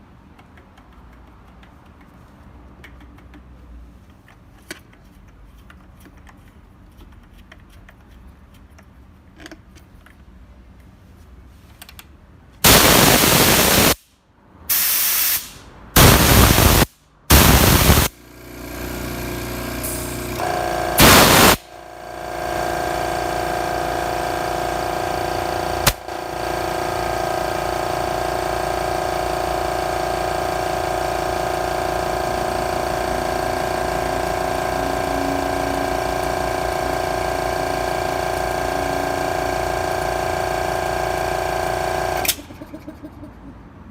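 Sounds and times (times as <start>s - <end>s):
air compressor running: 12.6s - 14.1s, 14.7s - 42.9s
short loud hiss: 14.7s - 18.1s.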